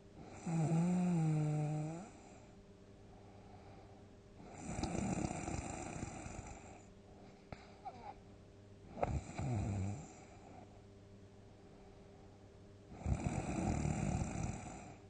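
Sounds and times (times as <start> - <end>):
person snoring loudly: 0.3 - 2.1, 4.5 - 6.7, 9.0 - 10.2, 13.0 - 15.0
faint clicks: 4.8 - 5.4.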